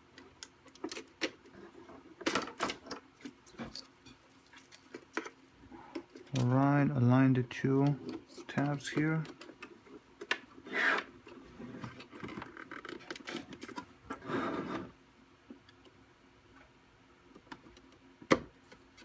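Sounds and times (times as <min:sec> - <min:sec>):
plastic parts scraping: 0:07.8 - 0:14.9.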